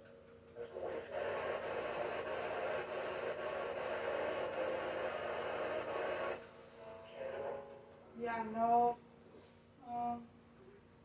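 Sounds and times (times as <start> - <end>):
radio static hiss: 0.6 - 6.5.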